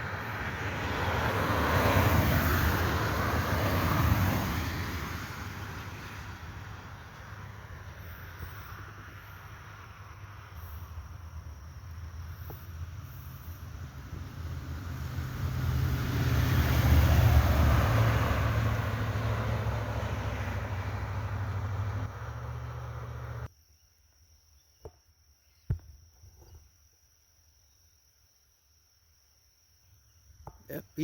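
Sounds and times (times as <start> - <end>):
vehicle driving past: 0.0 - 10.7, 12.8 - 23.5.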